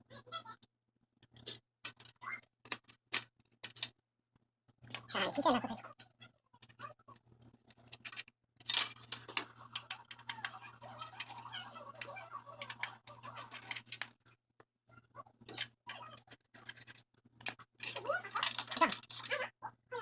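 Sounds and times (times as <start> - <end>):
small hard parts rustling: 1.2 - 4.0, 6.6 - 14.4, 15.4 - 19.5.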